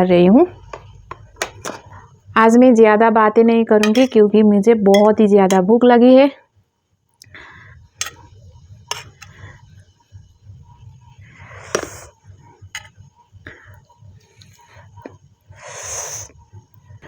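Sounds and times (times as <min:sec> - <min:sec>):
low steady hum: 0:00.0 - 0:17.0
utensils clinking on plate: 0:03.8 - 0:04.3, 0:05.0 - 0:05.2, 0:08.9 - 0:09.3
soft breathy bursts: 0:07.3 - 0:08.0.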